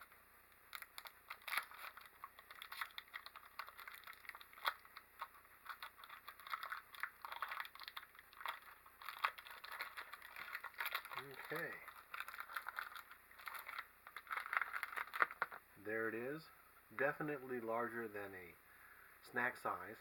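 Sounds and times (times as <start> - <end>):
plastic wrapper crinkling and tearing: 0.6 - 15.6.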